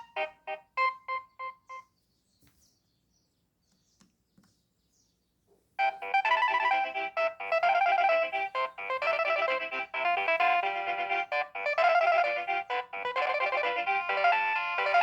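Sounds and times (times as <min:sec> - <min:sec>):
mobile phone ringtone melody: 0:00.0 - 0:01.9, 0:05.8 - 0:15.0.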